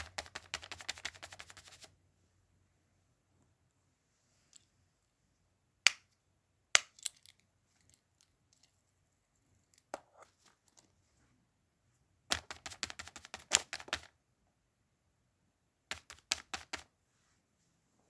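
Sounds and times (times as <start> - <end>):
clicks of small objects handled: 4.5 - 4.7, 5.8 - 11.0.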